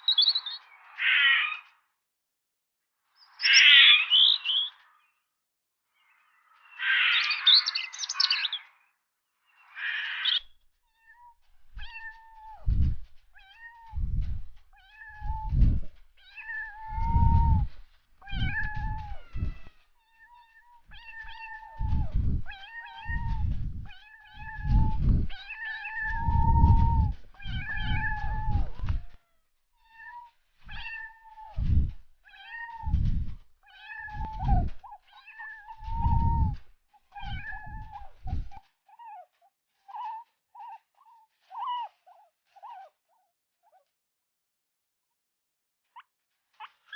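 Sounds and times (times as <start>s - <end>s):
cat meowing: 9.7s - 29.2s, 29.8s - 39.2s
low rumble: 11.6s - 13.2s, 13.8s - 19.8s, 20.9s - 29.2s, 30.7s - 32.1s, 32.8s - 33.4s, 34.1s - 34.8s, 35.8s - 36.6s, 37.2s - 38.5s.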